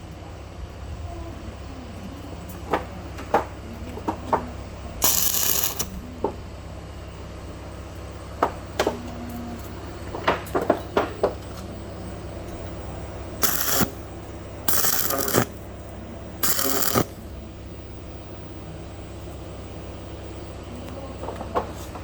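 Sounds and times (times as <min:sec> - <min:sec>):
low electrical hum: 0:00.0 - 0:22.0
welding arc crackle: 0:05.0 - 0:06.0, 0:13.4 - 0:14.1, 0:14.7 - 0:15.6, 0:16.4 - 0:17.2.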